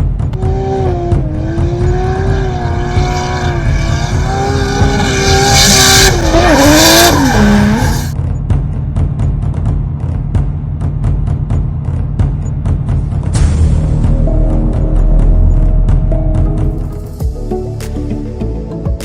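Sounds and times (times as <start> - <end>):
car engine at high revs: 0.0 - 8.3
thumping music beat: 0.3 - 8.7, 10.3 - 19.0.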